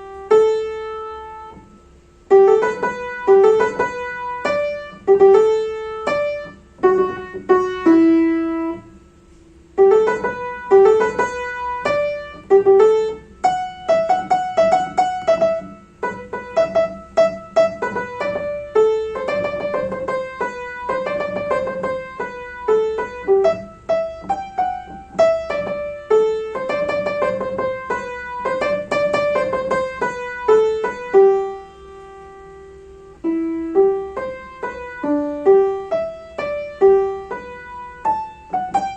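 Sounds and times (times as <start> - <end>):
solo piano playing: 0.0 - 38.9.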